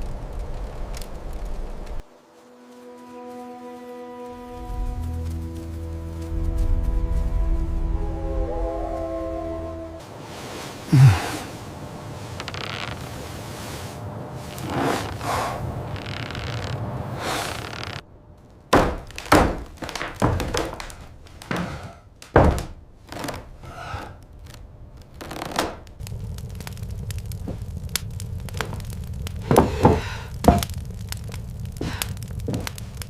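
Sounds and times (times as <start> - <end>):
steady low rumble: 4.4 - 10.2, 25.8 - 33.0
heavy thuds and knocks: 18.7 - 22.8, 29.4 - 30.8.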